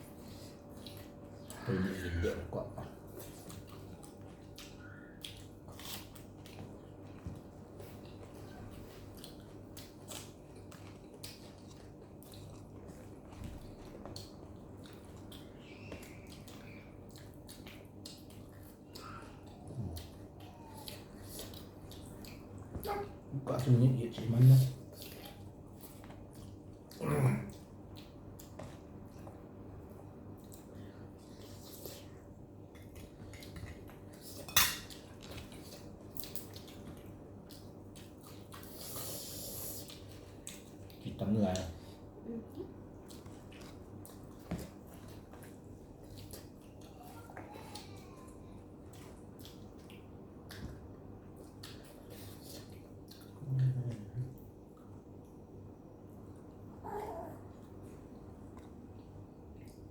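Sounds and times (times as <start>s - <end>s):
utensils clinking against dishes: 34.4s - 35.0s.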